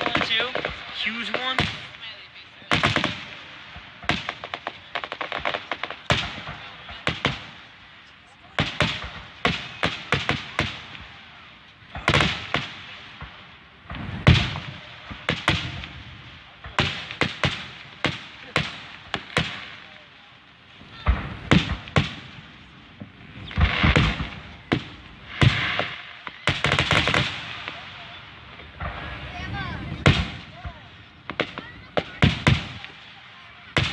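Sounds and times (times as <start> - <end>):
fireworks shells bursting: 20.9 - 33.1.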